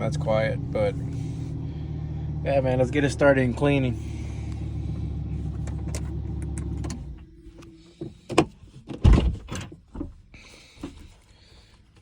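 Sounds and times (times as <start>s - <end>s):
car engine idling: 0.0s - 8.5s.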